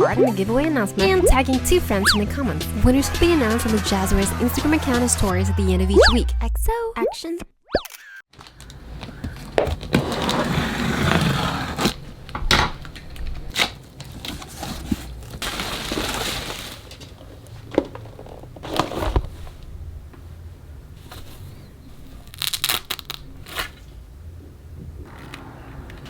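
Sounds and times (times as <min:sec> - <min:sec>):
plastic and cardboard crinkling: 0:08.3 - 0:19.7, 0:21.0 - 0:24.0.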